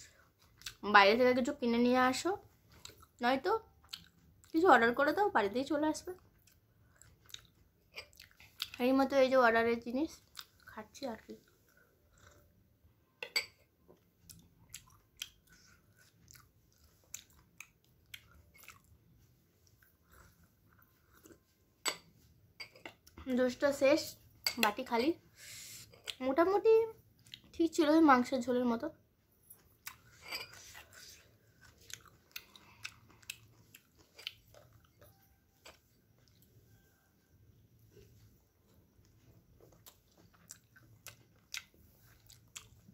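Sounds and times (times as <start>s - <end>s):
person chewing: 0.2s - 0.8s, 2.6s - 3.2s, 3.8s - 4.5s, 6.3s - 8.8s, 10.2s - 10.7s, 11.3s - 12.8s, 13.8s - 21.6s, 29.7s - 36.6s, 37.9s - 42.9s.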